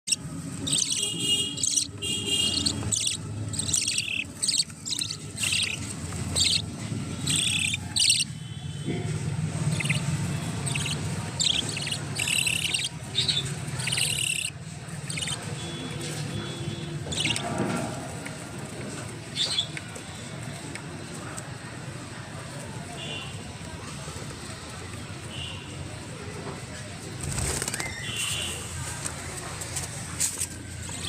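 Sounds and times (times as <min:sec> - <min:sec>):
budgerigars chirping: 0:00.1 - 0:08.4, 0:09.5 - 0:16.1, 0:17.0 - 0:17.5.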